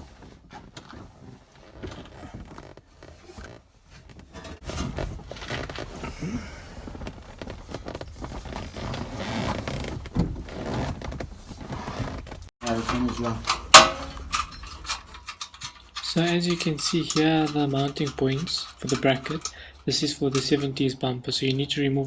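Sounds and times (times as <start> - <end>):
steel car bumper scraping and knocking: 12.6 - 20.9.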